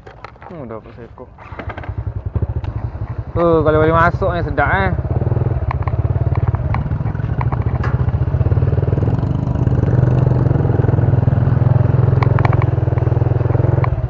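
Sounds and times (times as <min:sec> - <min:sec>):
light clicks and rattles: 0:00.0 - 0:02.0, 0:05.6 - 0:10.4, 0:12.2 - 0:13.1
small motorcycle engine running: 0:01.0 - 0:14.0.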